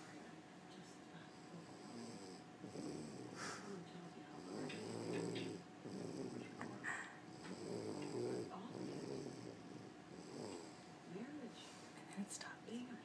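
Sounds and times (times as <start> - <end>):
woman snoring: 1.2 - 10.8.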